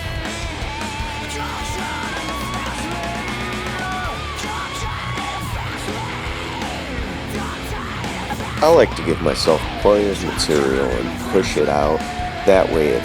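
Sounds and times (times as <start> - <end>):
guitar background music with beat: 0.0 - 13.0.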